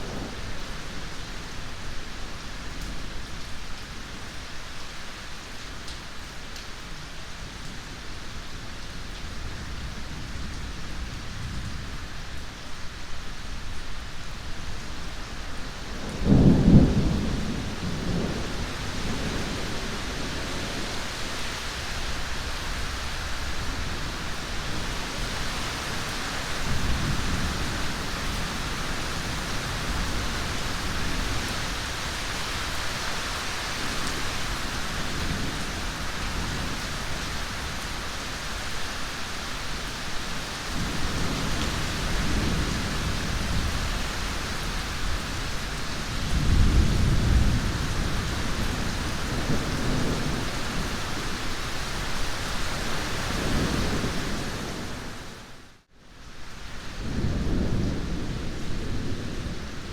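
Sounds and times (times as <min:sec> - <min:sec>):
heavy rain: 0:00.0 - 0:59.9
thunder rumbling: 0:16.0 - 0:21.2, 0:40.8 - 0:51.5.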